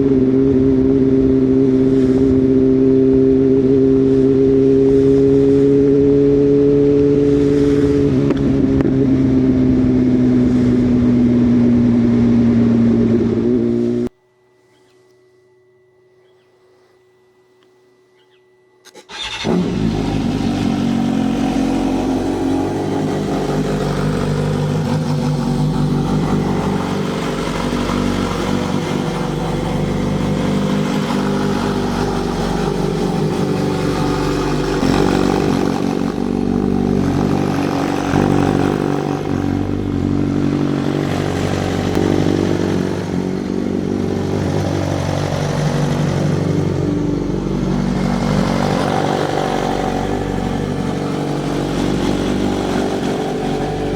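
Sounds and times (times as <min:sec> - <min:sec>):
motorcycle engine running: 0:00.0 - 0:14.1, 0:18.2 - 0:53.9.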